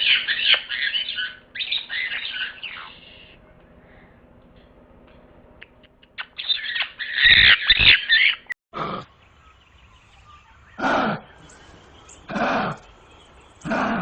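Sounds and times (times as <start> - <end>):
animal screeching calls: 6.4 - 8.4.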